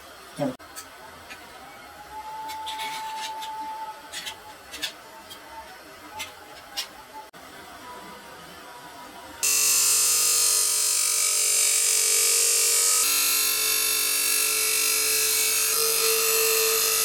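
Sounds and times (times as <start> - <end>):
electric power tool motor running: 9.4 - 17.0.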